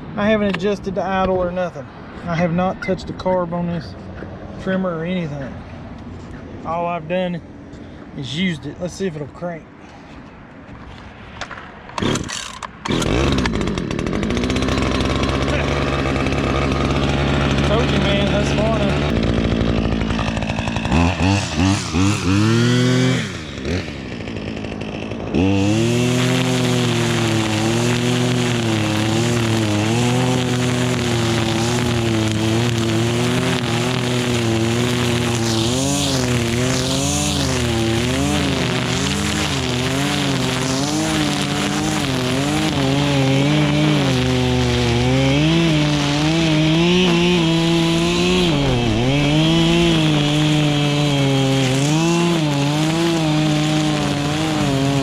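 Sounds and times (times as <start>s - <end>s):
string trimmer engine revving: 11.9s - 55.0s.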